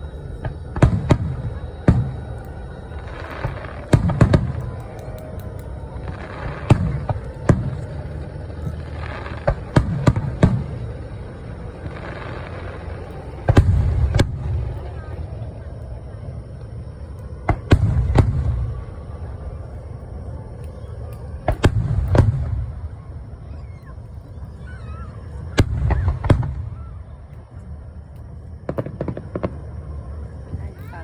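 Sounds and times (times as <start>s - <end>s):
crackling pops: 0.0s - 15.9s
fireworks bursting with bangs: 0.0s - 31.0s
low rumble: 0.0s - 31.0s.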